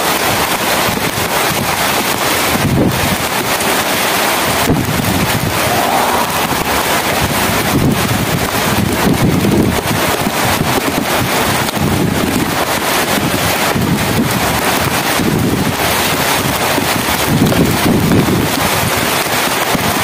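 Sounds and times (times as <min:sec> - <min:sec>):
heavy rain pouring: 0:00.0 - 0:20.0
wind buffeting microphone: 0:04.5 - 0:19.0.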